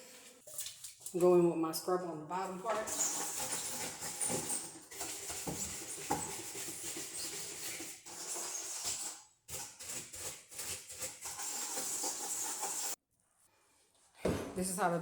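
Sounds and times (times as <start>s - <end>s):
scrubber scrubbing a door: 2.7s - 13.0s.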